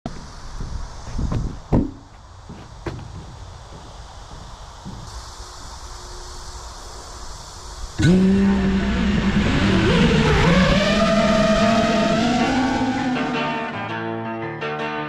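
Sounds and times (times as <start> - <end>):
steady hiss: 0.1 - 13.8
quadcopter motors whining: 2.8 - 13.7.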